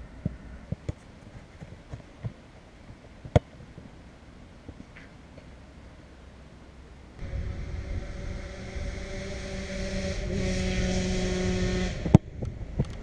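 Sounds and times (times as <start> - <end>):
motorcycle engine running: 7.2 - 12.7.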